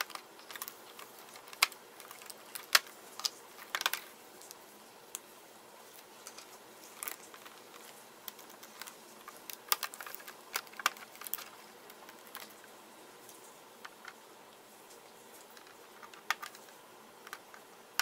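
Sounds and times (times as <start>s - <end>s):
small tools clicking on plastic: 0.0s - 4.6s, 6.2s - 12.6s, 15.5s - 17.6s.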